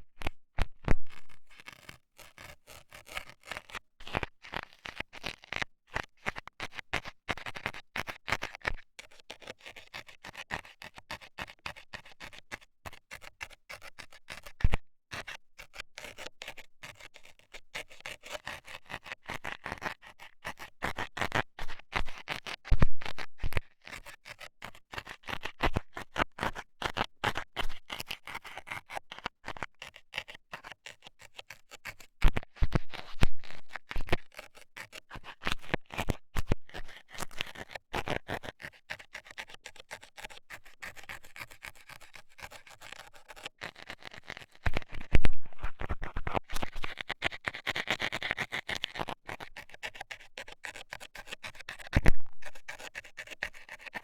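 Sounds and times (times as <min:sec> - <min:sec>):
thumps on microphone: 0:00.2 - 0:01.3, 0:22.7 - 0:23.6, 0:44.7 - 0:46.5, 0:52.0 - 0:52.6
metal scaler scraping microphone: 0:45.1 - 0:46.2, 0:52.0 - 0:52.7.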